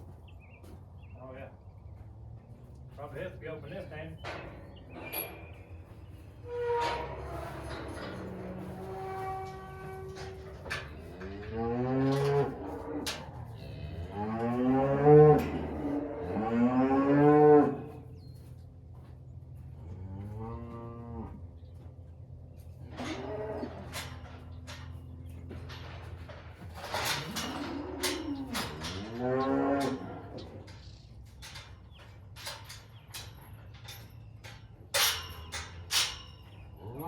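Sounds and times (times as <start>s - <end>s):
cattle mooing: 6.4s - 18.1s, 19.8s - 21.4s, 22.9s - 24.2s, 26.9s - 30.7s.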